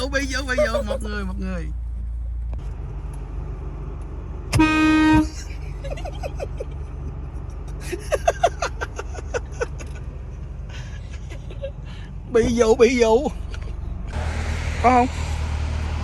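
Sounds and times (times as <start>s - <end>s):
car air horn blast: 4.6s - 5.3s.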